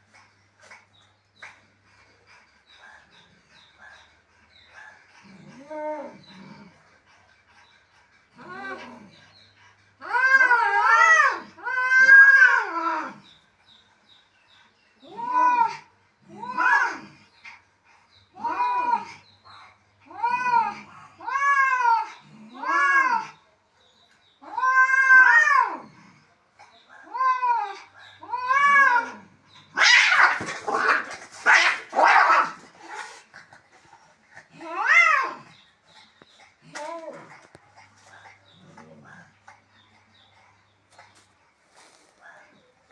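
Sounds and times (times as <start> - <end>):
cats yowling in a fight: 5.1 - 6.7, 8.3 - 9.2, 10.0 - 13.2, 15.0 - 17.2, 18.3 - 19.2, 20.0 - 23.4, 24.4 - 26.2, 26.9 - 33.3, 34.4 - 35.6, 36.6 - 37.6.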